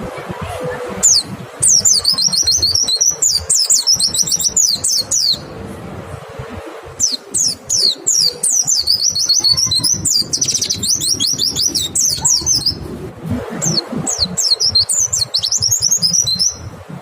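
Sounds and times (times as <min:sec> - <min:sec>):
bird singing high whistles: 0:01.0 - 0:05.5, 0:07.0 - 0:12.8, 0:13.6 - 0:16.7.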